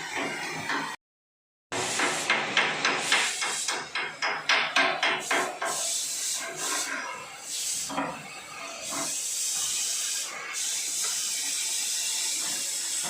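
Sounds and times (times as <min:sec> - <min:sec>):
hissing noise: 0:01.8 - 0:13.0
hammer striking: 0:01.9 - 0:05.8.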